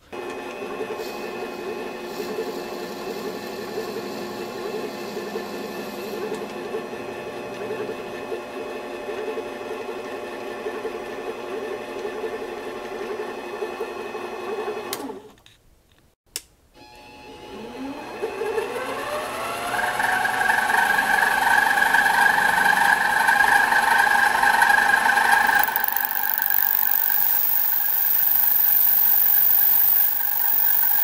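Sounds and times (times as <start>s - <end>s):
lathe motor whining: 17.5s - 31.0s
sharp clicks: 25.6s - 31.0s.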